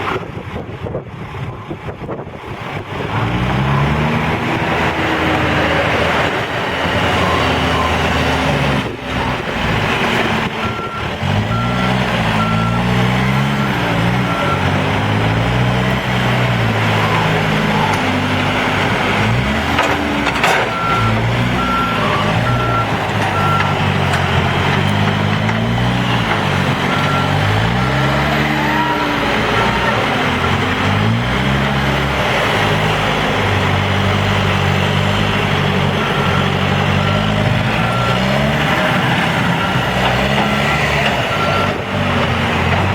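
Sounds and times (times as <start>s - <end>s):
diesel engine revving: 0.0s - 42.9s
reversing alarm beeping: 7.1s - 9.6s, 10.5s - 14.8s, 19.9s - 23.9s, 26.8s - 29.9s, 35.9s - 41.8s.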